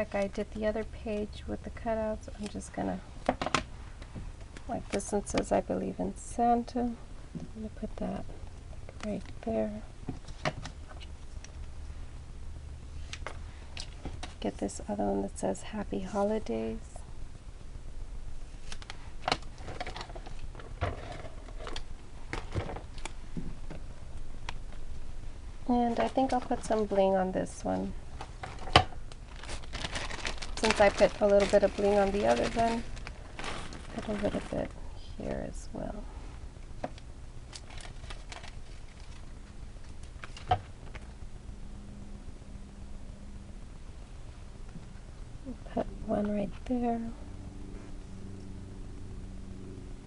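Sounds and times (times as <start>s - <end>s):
paper rustling: 29.3s - 34.6s
paper clicks and rustles: 37.5s - 41.0s.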